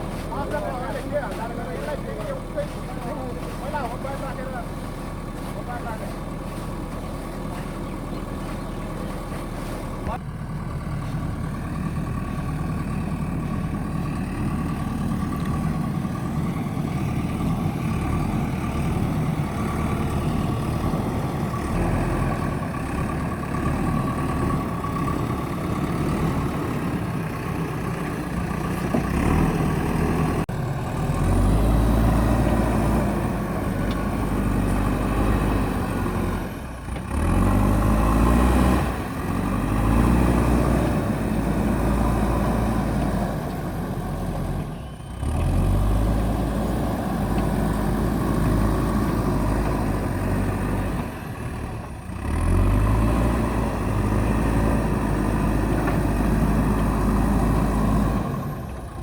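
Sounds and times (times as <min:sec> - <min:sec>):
diesel engine running: 0:00.0 - 0:59.0.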